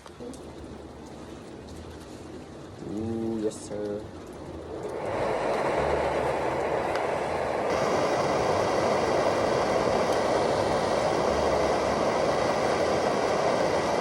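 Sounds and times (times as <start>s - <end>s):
camping stove burner hissing: 2.2s - 14.0s
sharp high hiss: 4.7s - 14.0s.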